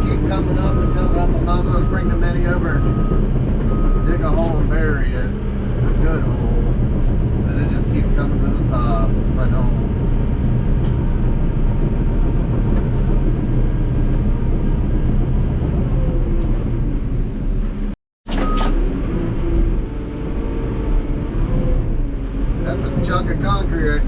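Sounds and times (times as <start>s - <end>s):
diesel engine running under load: 0.0s - 24.0s.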